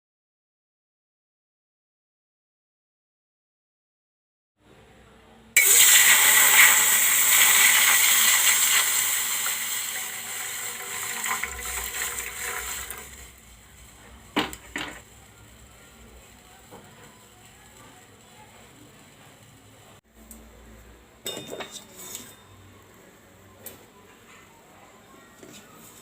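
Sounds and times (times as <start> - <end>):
water pouring into a pan: 5.6 - 13.7.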